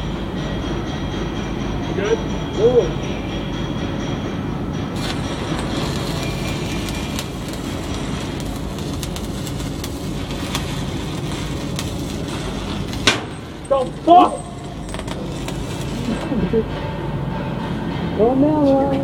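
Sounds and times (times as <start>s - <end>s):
welding arc hissing and crackling: 5.0s - 16.6s.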